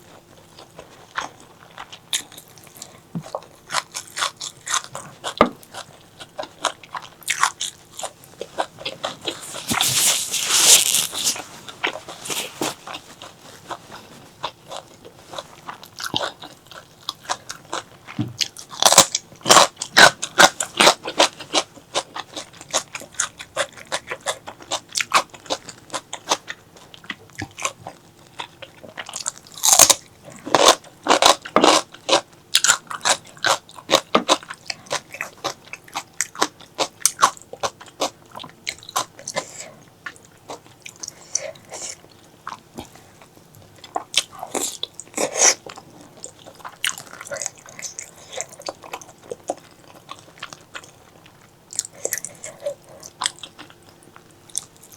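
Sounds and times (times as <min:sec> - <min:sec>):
close-miked eating and chewing: 0:00.0 - 0:54.9.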